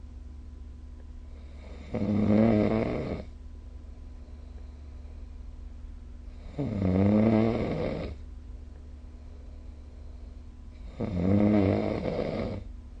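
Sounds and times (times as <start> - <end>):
low steady hum: 0.0 - 13.0
person snoring: 1.4 - 3.3, 6.3 - 8.2, 10.8 - 12.7.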